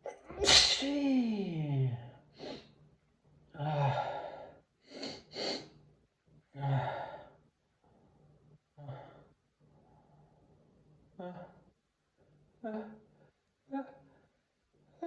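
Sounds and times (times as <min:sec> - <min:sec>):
sharp sniffs: 0:04.9 - 0:05.6.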